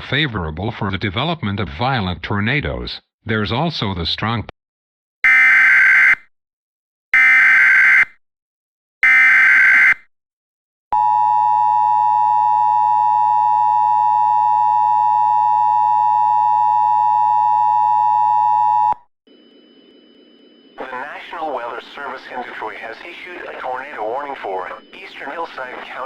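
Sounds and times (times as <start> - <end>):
steady loud attention tone: 11.0 - 26.0.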